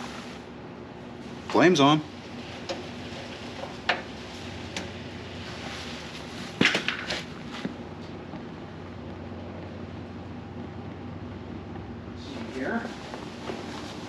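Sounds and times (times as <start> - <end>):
light clicks and knocks of handling heater: 2.6 - 5.0.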